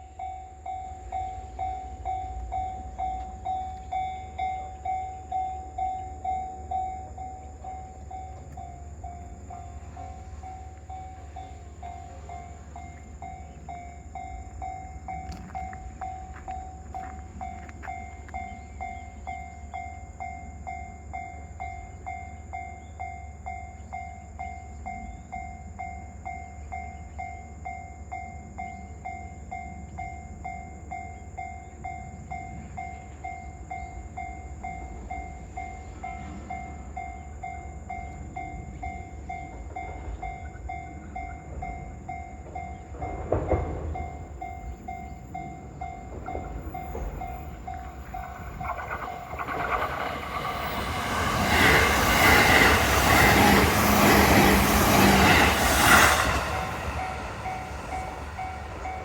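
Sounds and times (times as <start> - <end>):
level-crossing warning bell ringing: 0.0 - 59.0
train rumbling past: 0.0 - 59.0
train wheel clicks: 10.0 - 19.9, 37.9 - 59.0.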